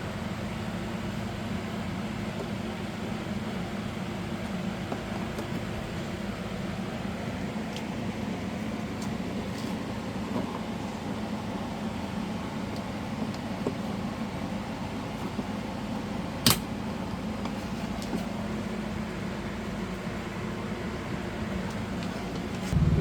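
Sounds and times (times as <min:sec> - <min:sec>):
steady low hum: 0:22.6 - 0:23.0.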